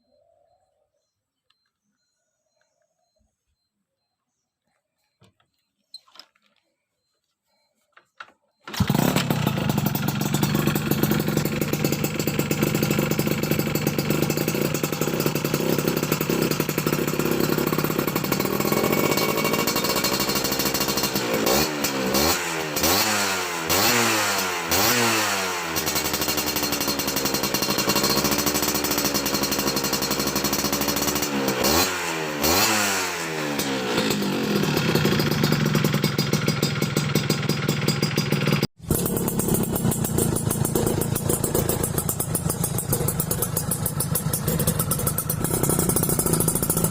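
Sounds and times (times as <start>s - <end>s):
two-stroke engine idling and revving: 8.6s - 46.9s.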